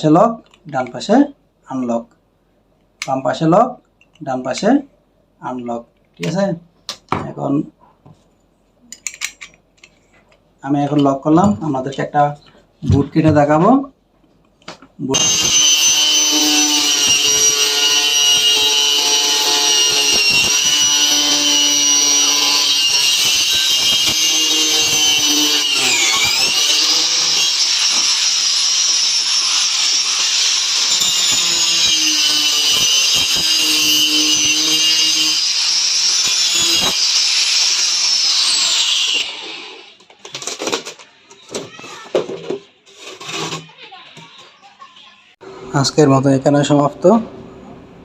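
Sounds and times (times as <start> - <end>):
angle grinder whining: 15.1 - 40.8.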